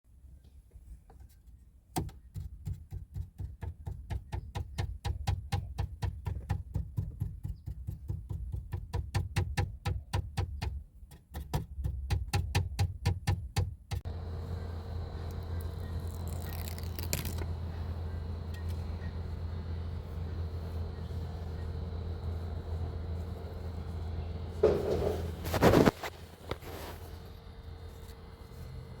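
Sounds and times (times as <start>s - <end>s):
low rumble: 14.1s - 29.0s.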